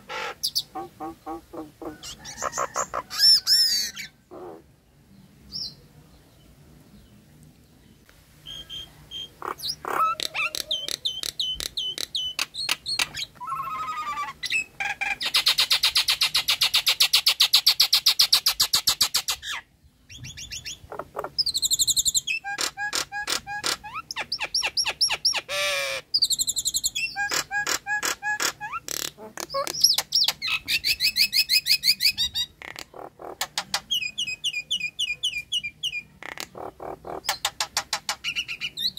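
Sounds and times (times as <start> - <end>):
bird trilling: 0.0 - 4.6, 8.4 - 16.5, 20.2 - 38.9
myna whistling and chattering: 8.5 - 14.7.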